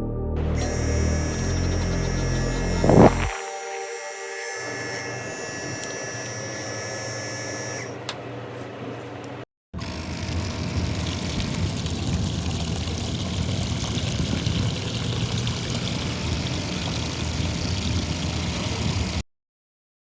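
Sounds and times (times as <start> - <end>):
electric motor humming: 0.6 - 8.1, 9.8 - 12.4, 14.8 - 19.2
water rushing: 10.0 - 19.2.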